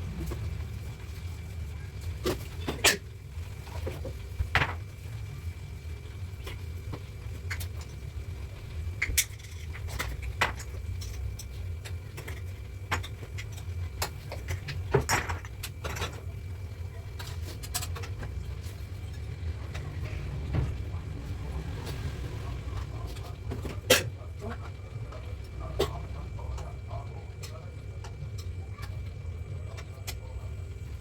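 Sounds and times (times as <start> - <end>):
steady low rumble: 0.0 - 2.2, 16.4 - 31.0.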